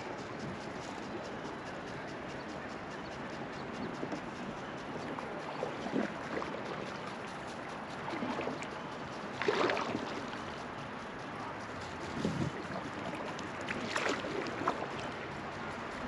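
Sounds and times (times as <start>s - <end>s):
river water flowing and lapping: 0.0s - 16.0s
water splashes: 3.8s - 11.2s, 12.0s - 16.0s.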